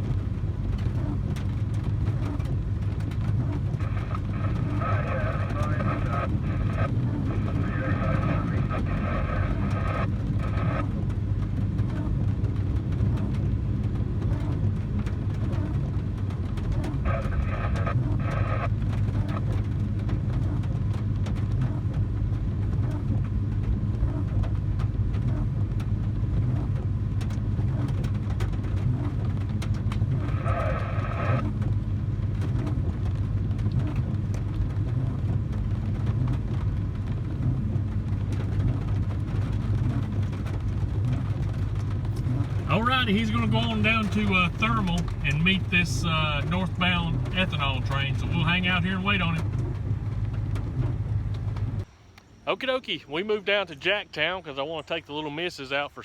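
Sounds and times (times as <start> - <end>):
low engine drone: 0.0 - 54.8
faint muffled voice: 3.8 - 10.6.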